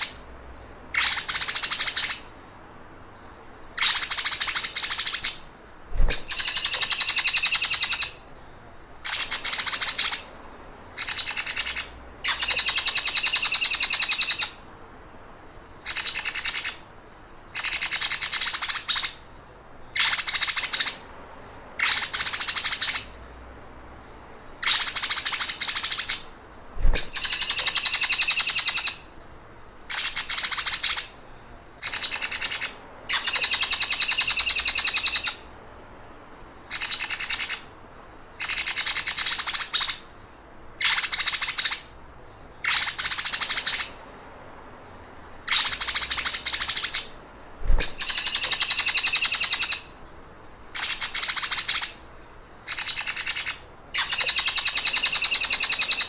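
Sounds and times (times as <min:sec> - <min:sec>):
songbird buzzing trill: 0:03.2 - 0:14.6, 0:24.0 - 0:35.5, 0:44.9 - 0:56.0.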